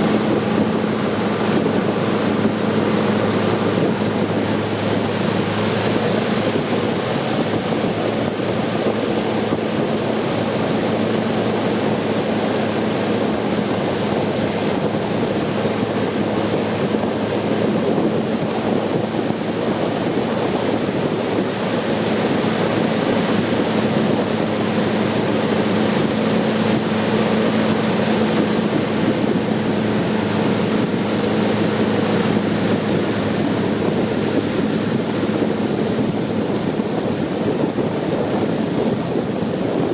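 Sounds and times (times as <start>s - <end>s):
boat engine drone: 0.0s - 39.9s
rushing water: 0.0s - 39.9s
wind on microphone: 0.0s - 39.9s.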